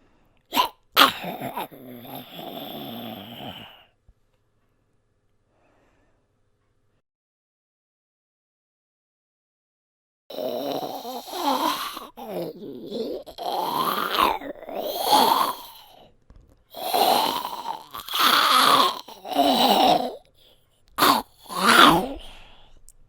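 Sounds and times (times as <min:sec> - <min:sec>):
man growling: 0:00.5 - 0:03.8, 0:10.3 - 0:16.0, 0:16.7 - 0:22.8.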